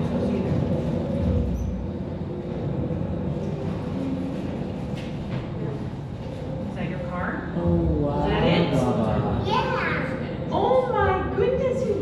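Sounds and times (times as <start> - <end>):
mechanical lift rumble: 0.0 - 8.4.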